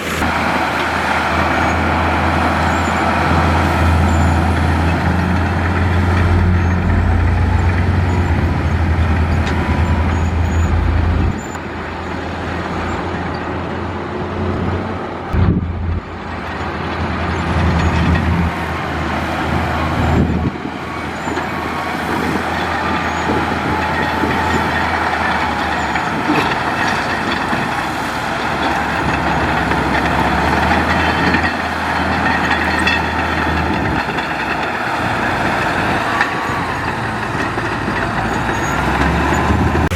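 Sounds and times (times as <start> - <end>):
heavy diesel machinery engines: 0.0 - 39.9.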